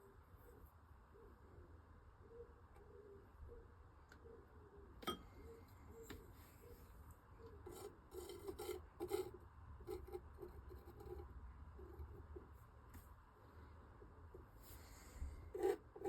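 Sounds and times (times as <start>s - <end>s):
palette knife scraping paint: 7.6s - 12.3s, 15.5s - 16.0s.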